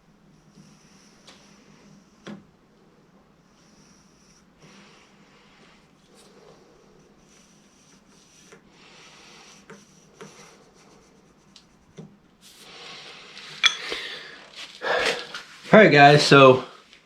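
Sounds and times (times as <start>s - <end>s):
marking tool scraping on wood: 6.2s - 13.6s.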